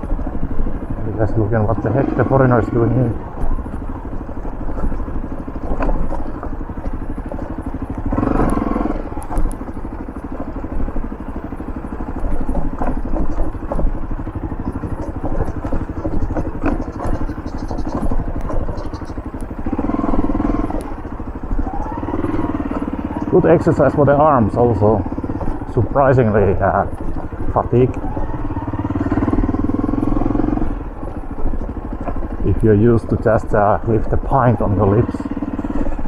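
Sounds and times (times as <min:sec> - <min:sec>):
motorcycle engine running: 0:00.0 - 0:36.0
motorcycle rattling over bumps: 0:00.0 - 0:36.0.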